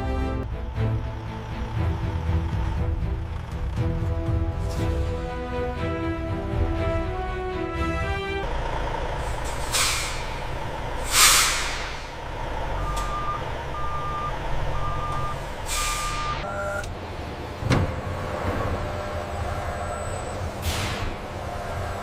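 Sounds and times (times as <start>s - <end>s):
truck engine running: 0.0s - 22.0s
air brakes hissing: 9.2s - 12.3s, 15.3s - 16.5s, 20.2s - 22.0s
reversing alarm beeping: 12.7s - 16.9s.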